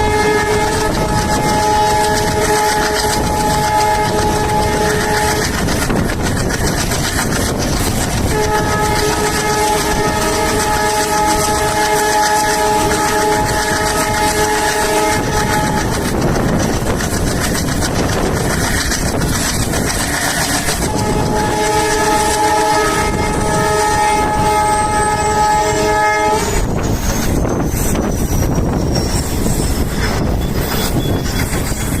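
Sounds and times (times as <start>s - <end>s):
locomotive horn blast: 0.0s - 16.6s, 17.9s - 26.9s
running train noise: 0.0s - 32.0s
wheels clacking over rail joints: 0.0s - 32.0s.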